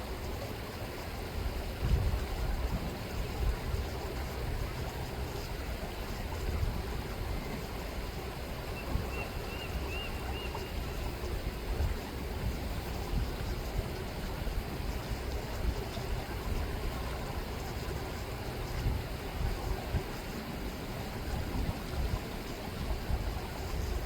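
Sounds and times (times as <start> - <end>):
river water rippling: 0.0 - 24.0
wind rumbling on microphone: 0.0 - 24.0
faint high bird calls: 8.8 - 10.8.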